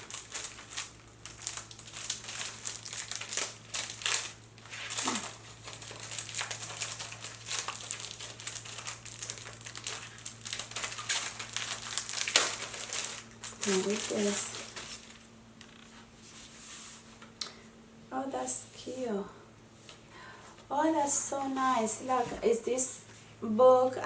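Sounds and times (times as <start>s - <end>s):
packaging crinkling and rustling: 0.0s - 16.1s.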